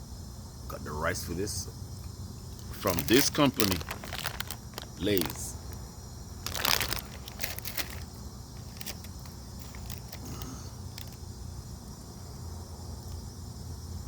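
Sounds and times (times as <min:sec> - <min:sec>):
steady low hum: 0:00.0 - 0:14.0
chip bag crinkling: 0:02.6 - 0:05.8, 0:06.4 - 0:11.2.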